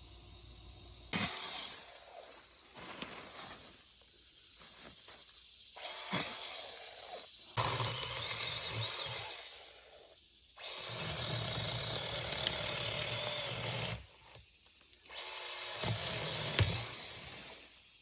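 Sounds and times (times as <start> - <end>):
small chainsaw cutting branch: 1.1 - 2.6, 5.8 - 9.7, 10.6 - 17.8.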